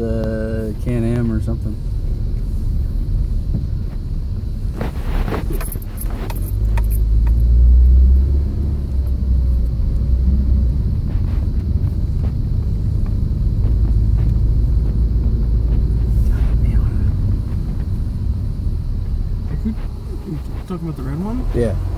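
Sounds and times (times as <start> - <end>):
car engine and road rumble: 0.0 - 21.9.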